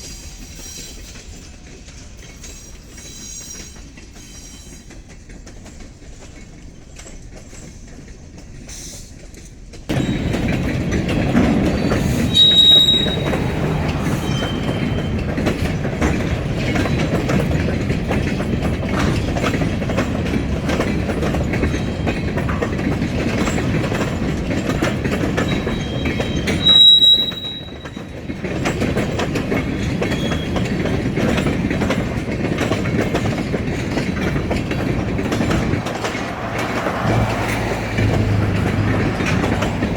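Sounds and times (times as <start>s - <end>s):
freight train rolling past: 0.0s - 39.9s
wheels clicking over rail joints: 0.0s - 39.9s
high-pitched wheel squeals: 9.9s - 10.7s, 11.6s - 15.7s, 25.4s - 28.2s, 29.8s - 30.7s.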